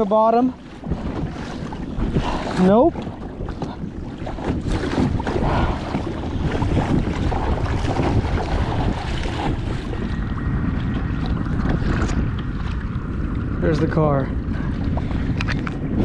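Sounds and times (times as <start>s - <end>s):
water lapping against kayak: 0.0s - 16.0s
wind buffeting microphone: 0.0s - 16.0s.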